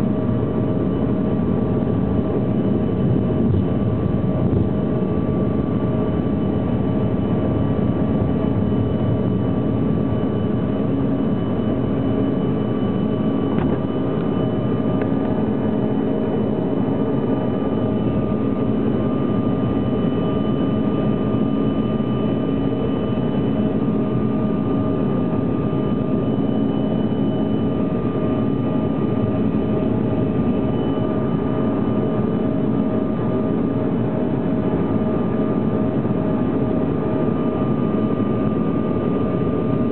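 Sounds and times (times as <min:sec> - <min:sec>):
jet engines roaring: 0:00.1 - 0:20.1.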